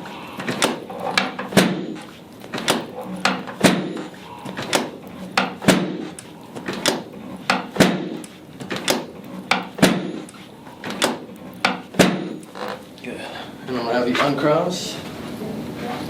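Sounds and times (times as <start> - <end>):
heavy table thud: 0.5 - 12.5.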